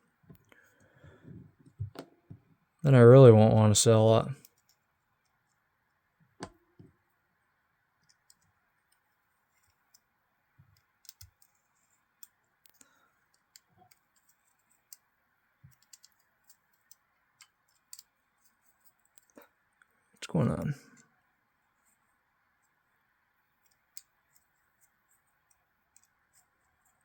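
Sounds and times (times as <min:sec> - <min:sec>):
small metal parts clicking: 0:15.7 - 0:19.3.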